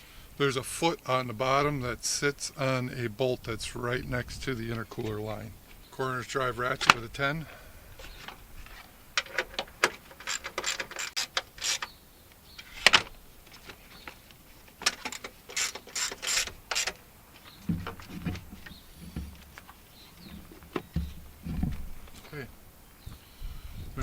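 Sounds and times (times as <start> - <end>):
socket ratchet clicking: 14.8 - 17.0
low knocks: 20.3 - 22.2.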